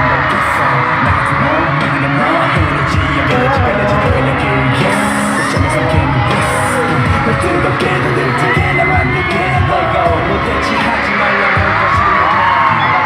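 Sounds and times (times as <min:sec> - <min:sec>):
live pop music with singing: 0:00.0 - 0:13.0.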